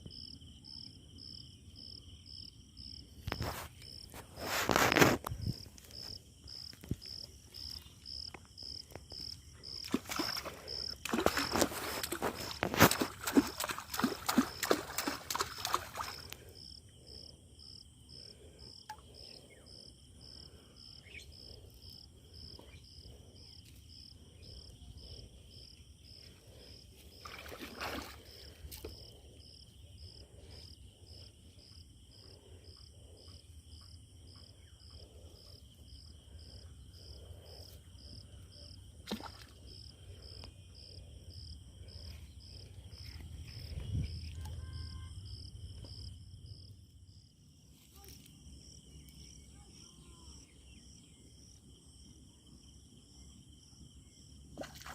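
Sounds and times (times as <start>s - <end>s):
insect chirping: 0.0s - 54.9s
splashy handling noise: 9.8s - 16.4s, 27.2s - 28.4s.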